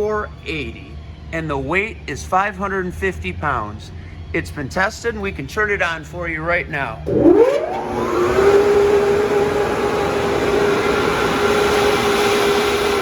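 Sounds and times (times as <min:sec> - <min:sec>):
blower whining: 0:00.0 - 0:13.0
rushing air: 0:07.1 - 0:13.0.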